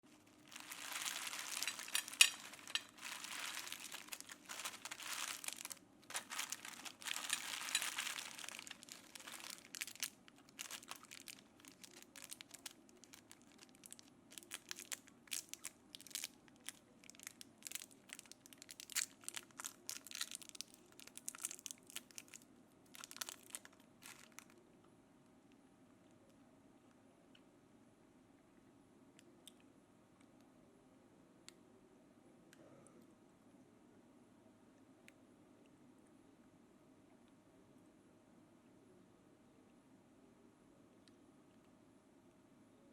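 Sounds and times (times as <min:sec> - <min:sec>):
candy wrappers crinkling: 0:00.0 - 0:24.6
small clicks and crackles: 0:00.0 - 0:24.6.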